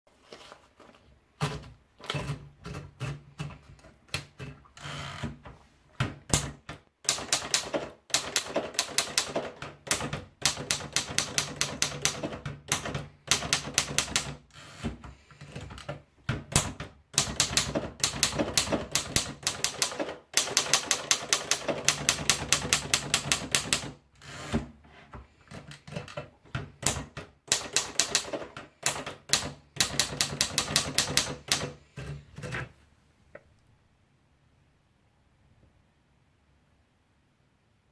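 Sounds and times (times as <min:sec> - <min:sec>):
typewriter key strikes: 0:06.3 - 0:14.4, 0:16.5 - 0:23.9, 0:26.8 - 0:31.8.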